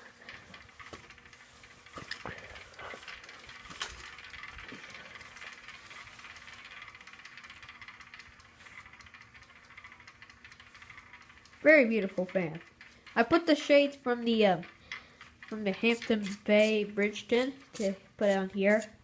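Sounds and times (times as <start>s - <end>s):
ceiling fan humming: 0.0s - 19.0s.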